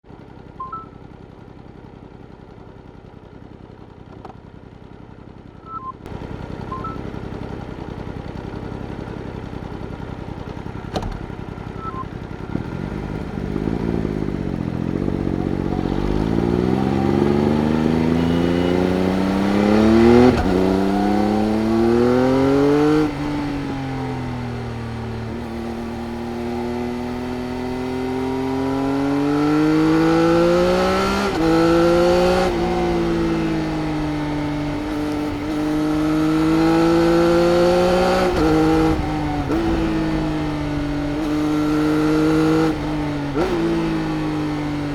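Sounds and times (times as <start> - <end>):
motorcycle engine revving: 0.1 - 44.9
short electronic beeps: 0.6 - 1.0, 5.6 - 6.0, 6.7 - 7.0, 11.8 - 12.1, 17.1 - 19.2.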